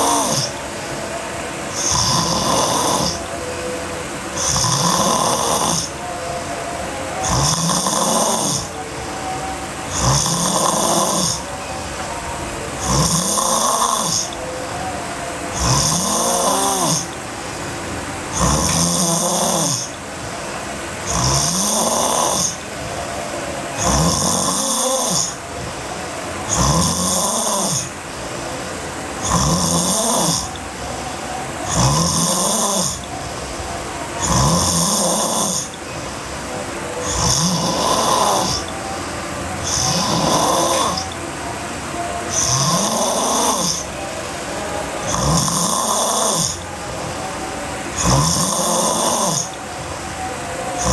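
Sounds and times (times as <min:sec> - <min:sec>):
girl snoring: 0:00.0 - 0:00.6, 0:01.7 - 0:03.5, 0:04.4 - 0:06.1, 0:07.2 - 0:09.2, 0:09.9 - 0:11.6, 0:12.8 - 0:14.5, 0:15.5 - 0:17.2, 0:18.3 - 0:20.4, 0:21.0 - 0:22.6, 0:23.8 - 0:25.8, 0:26.4 - 0:36.3, 0:37.0 - 0:39.0, 0:39.6 - 0:41.2, 0:42.2 - 0:44.0, 0:45.0 - 0:47.2, 0:47.9 - 0:49.6.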